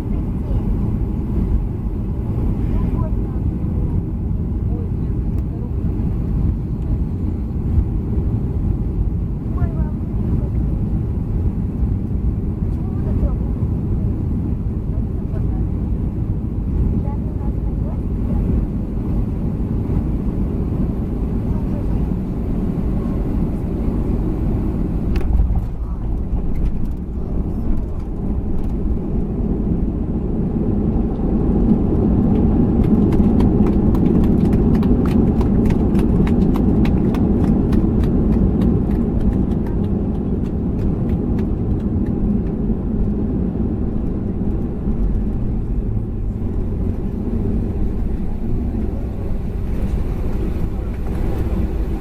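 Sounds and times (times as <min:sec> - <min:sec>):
airplane cabin rumble: 0:00.0 - 0:52.0.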